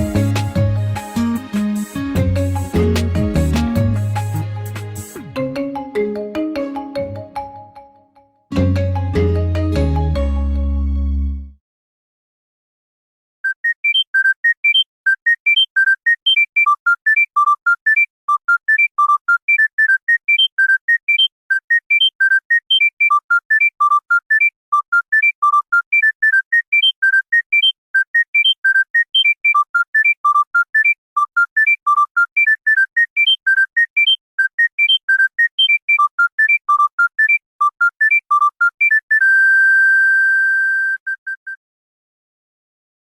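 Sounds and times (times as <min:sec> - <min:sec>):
monophonic phone ringtone: 0:13.6 - 0:41.5.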